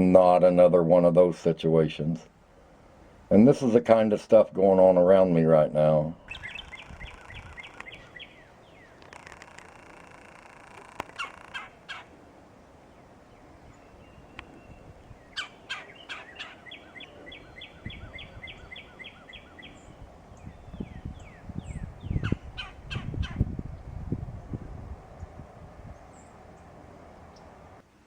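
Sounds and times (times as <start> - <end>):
bird call notes: 6.2 - 12.2, 12.9 - 23.4
woodpecker tapping: 6.3 - 12.1, 15.4 - 17.0
low rumbling noise: 19.7 - 27.8.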